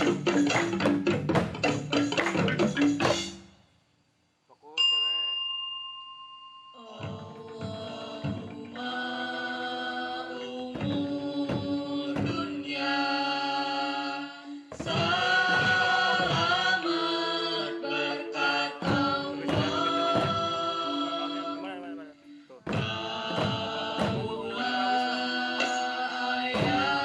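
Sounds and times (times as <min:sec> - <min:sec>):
voices chanting held tones: 0:06.6 - 0:27.0.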